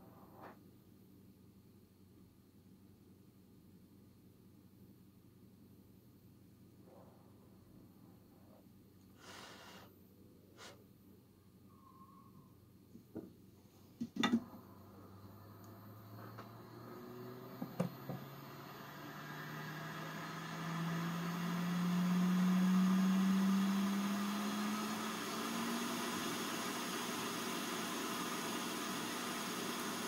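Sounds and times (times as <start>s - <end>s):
small electric motor spinning up: 14.7s - 30.0s.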